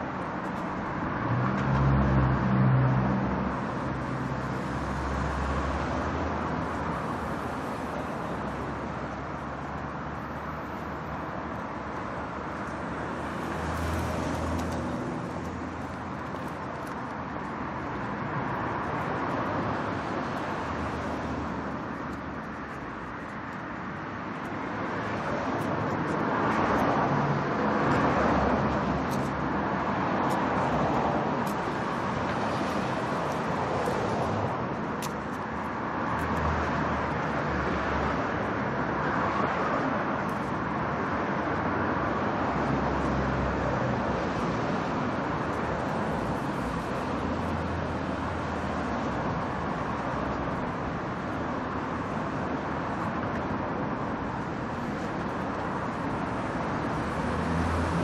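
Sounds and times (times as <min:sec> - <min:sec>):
car engines: 0:00.0 - 0:58.0.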